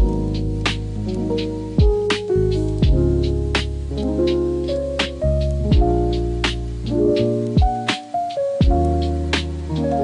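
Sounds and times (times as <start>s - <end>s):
slow drum beat: 0.0s - 6.9s, 7.5s - 9.9s
held chords: 0.0s - 10.0s
bass line: 2.5s - 7.8s.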